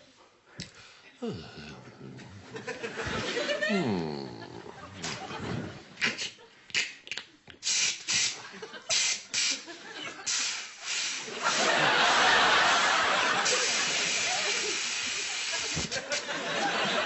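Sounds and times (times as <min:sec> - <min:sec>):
audience chuckling: 0:01.3 - 0:06.7, 0:11.2 - 0:17.0
person hissing by mouth: 0:07.6 - 0:09.6, 0:10.3 - 0:11.3, 0:13.5 - 0:16.2.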